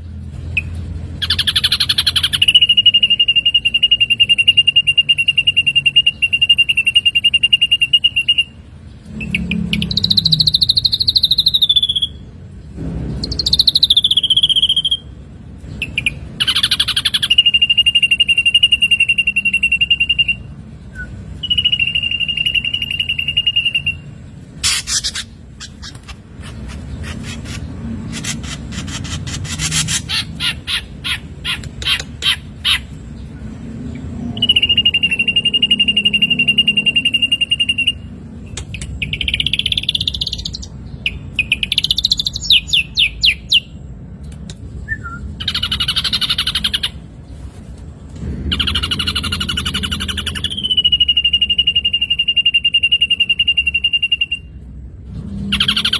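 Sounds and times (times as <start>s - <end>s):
bird singing whistles: 1.2s - 12.2s, 13.2s - 15.1s, 15.8s - 24.1s, 34.4s - 43.7s, 44.8s - 46.9s, 48.5s - 54.6s.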